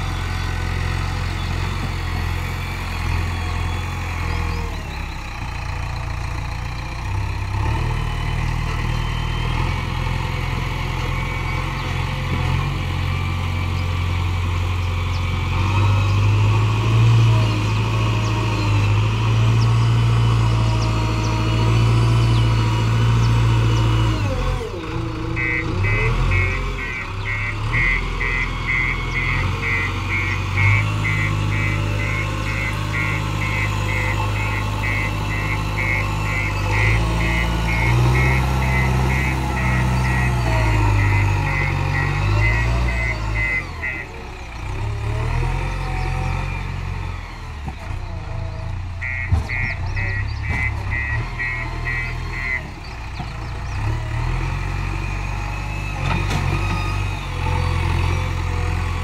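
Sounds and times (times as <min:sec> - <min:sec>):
diesel engine working under load: 0:00.0 - 0:59.0
rapid high reversing beeps: 0:25.4 - 0:44.2, 0:49.0 - 0:52.8.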